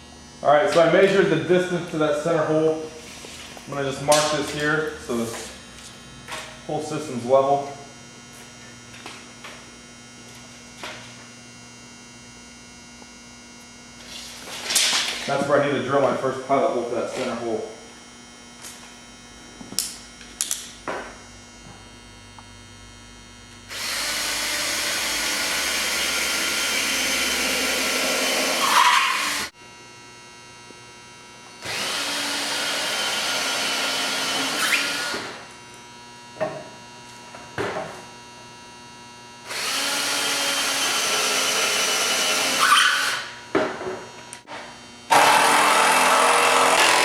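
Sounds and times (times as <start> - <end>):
electric drill boring into wood: 23.7 - 29.5, 31.6 - 35.4, 39.4 - 43.4, 45.1 - 47.0.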